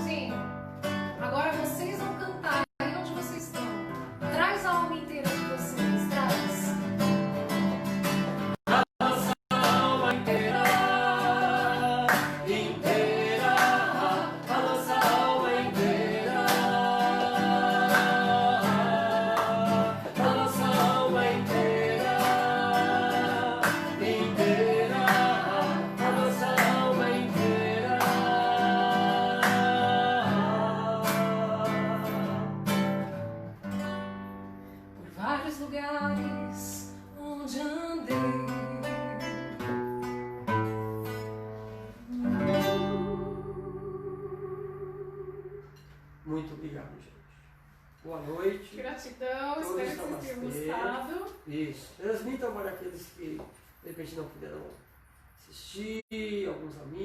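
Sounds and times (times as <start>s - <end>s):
acoustic guitar strummed and plucked: 0.0s - 46.2s
person singing long notes: 42.0s - 45.7s.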